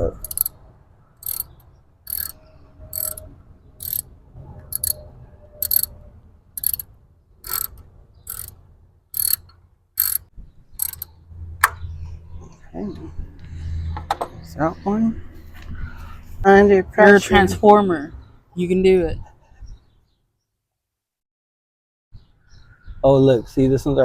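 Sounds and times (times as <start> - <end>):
ratchet wrench clicking: 0.2 - 0.5, 1.2 - 3.2, 3.8 - 4.0, 4.7 - 5.0, 5.6 - 5.9, 6.6 - 8.5, 9.2 - 10.2, 10.8 - 11.1.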